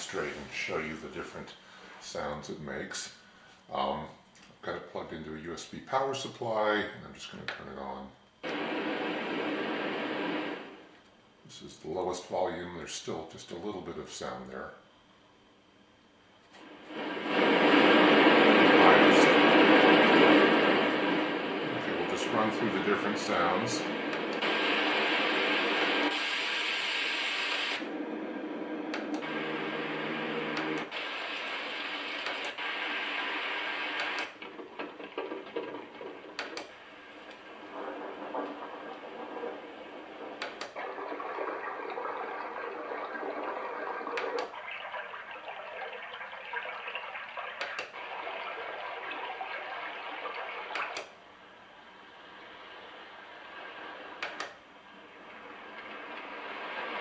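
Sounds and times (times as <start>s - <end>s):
white noise machine sounds: 0.0s - 57.0s
low hum: 16.6s - 50.6s.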